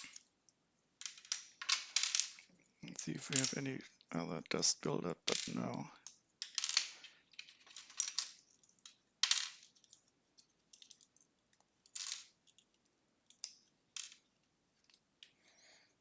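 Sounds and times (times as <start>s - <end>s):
plastic toy bricks clicking: 1.0s - 3.6s, 5.3s - 10.1s, 10.7s - 15.4s.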